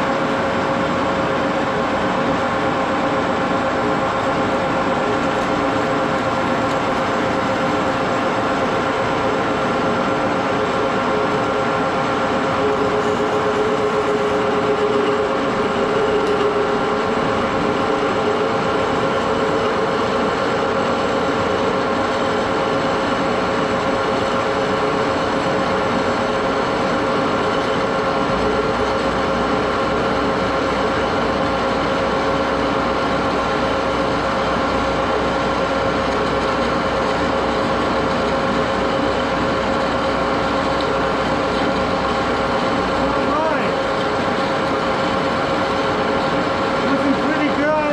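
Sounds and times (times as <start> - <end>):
lathe gearbox whine: 0.0 - 47.9.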